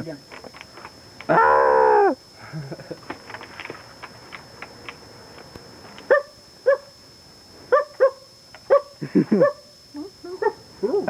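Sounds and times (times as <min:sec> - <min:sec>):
dog barking: 0:06.1 - 0:06.9, 0:07.7 - 0:09.7.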